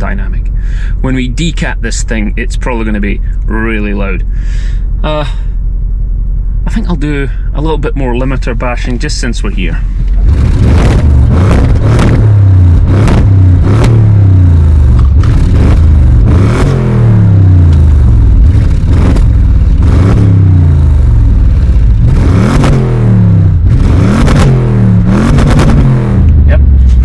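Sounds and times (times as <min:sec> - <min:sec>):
exhaust cracks: 0:00.0 - 0:27.0
car engine revving to limiter: 0:09.8 - 0:27.0.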